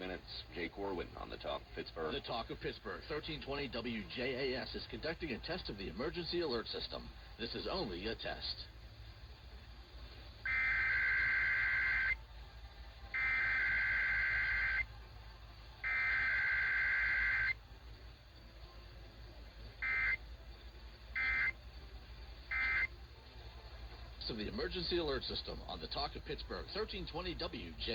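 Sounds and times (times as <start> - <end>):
digital data bursts over radio: 10.4 - 12.2, 13.2 - 14.9, 15.8 - 17.6, 19.7 - 20.4, 21.1 - 21.6, 22.4 - 23.0, 24.2 - 27.9.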